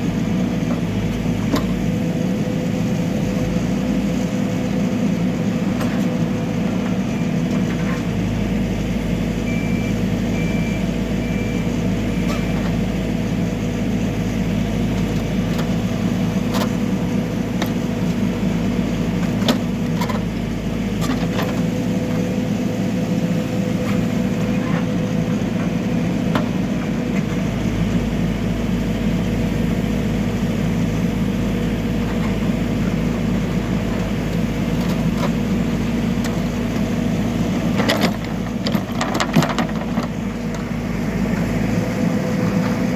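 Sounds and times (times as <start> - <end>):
diesel engine running: 0.0 - 42.9
high beeps: 9.5 - 11.6.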